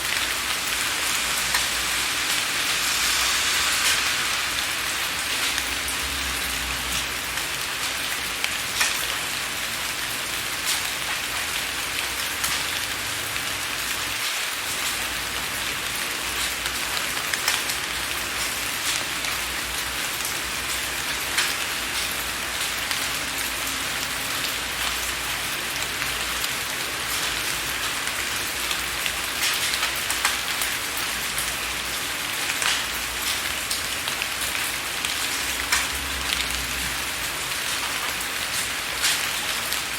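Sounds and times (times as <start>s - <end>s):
steady rain: 0.0s - 39.9s
raindrops ticking on window glass: 5.3s - 39.9s.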